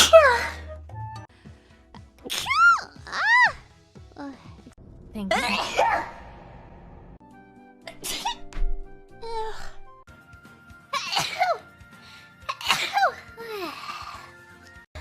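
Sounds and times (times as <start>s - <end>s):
faint background music: 10.8s - 15.0s
young women sneezing: 12.5s - 13.2s.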